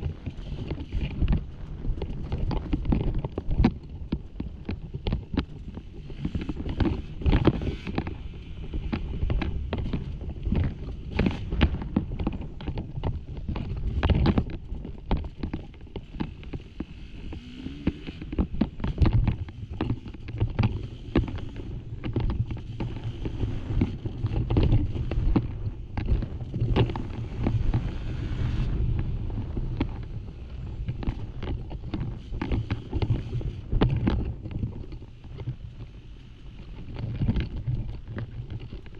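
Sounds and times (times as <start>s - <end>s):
rocks knocking against bike: 0.0s - 38.9s
dirt bike engine: 15.6s - 38.0s.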